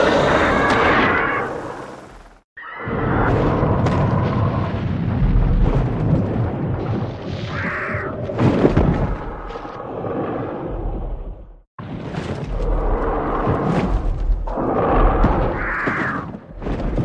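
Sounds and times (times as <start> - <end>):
rumbling blast effect: 0.0 - 7.5.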